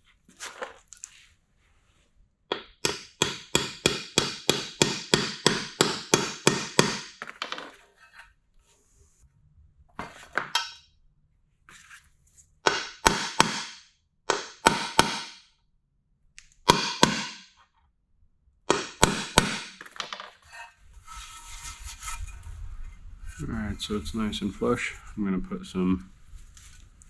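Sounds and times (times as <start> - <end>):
hammer tapping metal: 2.5 - 7.2, 10.4 - 10.8, 12.7 - 15.4.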